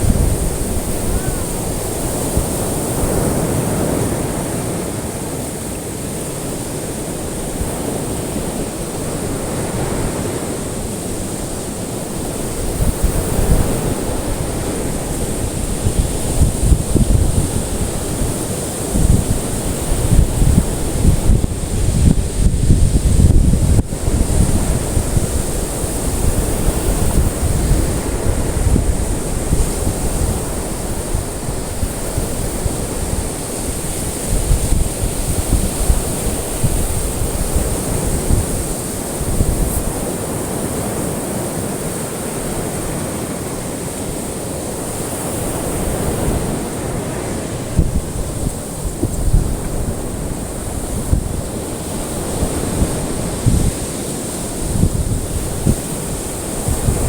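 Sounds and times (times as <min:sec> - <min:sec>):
faint high hiss: 0:00.0 - 0:03.5
ocean waves washing: 0:00.0 - 0:57.0
wind buffeting microphone: 0:00.0 - 0:57.0.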